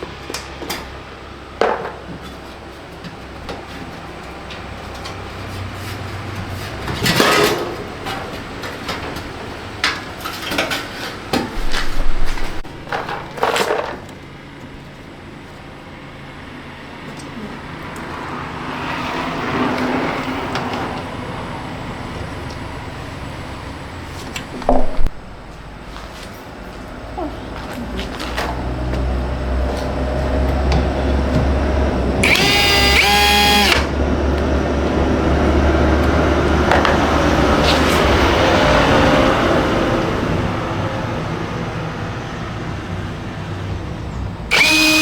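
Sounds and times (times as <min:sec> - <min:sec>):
metal parts and tools clanking: 0:10.2 - 0:14.2.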